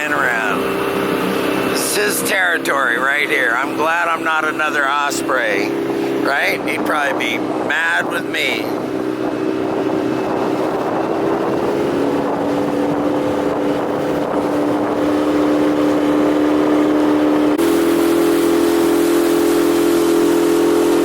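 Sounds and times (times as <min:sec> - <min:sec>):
motorboat engine running: 0:00.0 - 0:21.0
water and wind hiss: 0:00.0 - 0:21.0.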